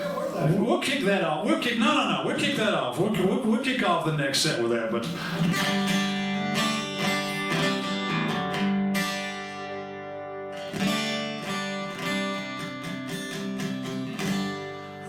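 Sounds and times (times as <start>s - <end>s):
acoustic guitar strumming: 5.1s - 15.0s.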